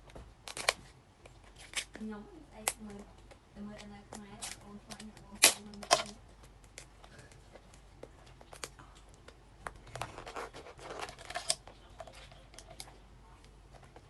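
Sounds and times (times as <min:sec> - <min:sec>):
crab shells cracking: 0:00.4 - 0:00.8, 0:04.1 - 0:12.9.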